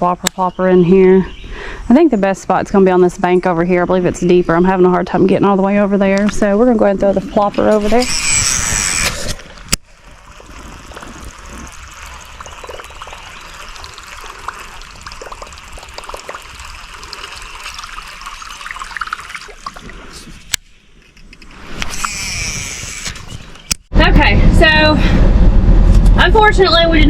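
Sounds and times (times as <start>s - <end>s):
fishing lure gurgling across water: 8.0s - 20.4s.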